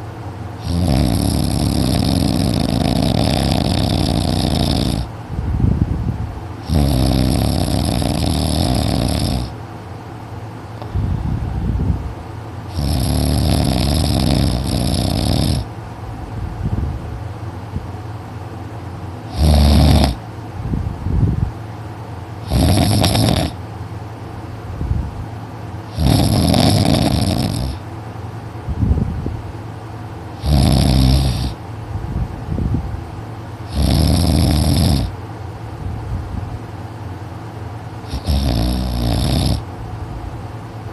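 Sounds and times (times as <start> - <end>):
boy snoring heavily: 0.6 - 5.1, 6.6 - 9.6, 12.7 - 15.7, 19.3 - 20.2, 22.4 - 23.6, 25.9 - 27.8, 30.4 - 31.6, 33.7 - 35.2, 38.1 - 39.6.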